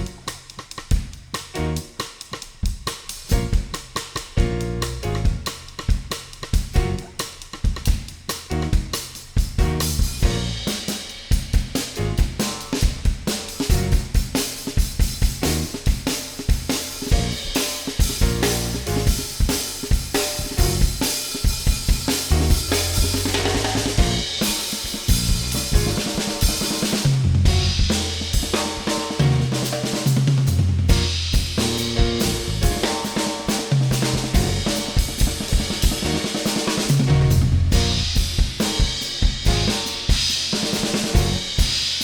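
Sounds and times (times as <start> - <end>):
held bass notes: 0.0 - 0.3, 3.3 - 3.6, 4.4 - 5.5, 6.8 - 7.2, 8.5 - 8.9, 9.6 - 10.7, 13.7 - 14.1, 15.4 - 15.8, 17.1 - 17.5, 18.2 - 19.3, 20.6 - 21.0, 22.3 - 24.4, 25.1 - 26.1, 27.1 - 28.2, 30.5 - 33.0, 33.9 - 34.8, 37.0 - 38.4, 39.5 - 39.8, 41.2 - 41.5
drum kit groove: 0.0 - 42.0.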